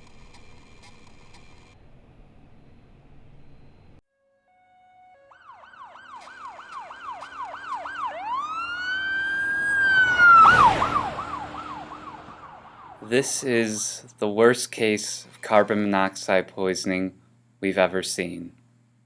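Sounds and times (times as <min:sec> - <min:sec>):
emergency vehicle siren: 0:01.7 - 0:13.9.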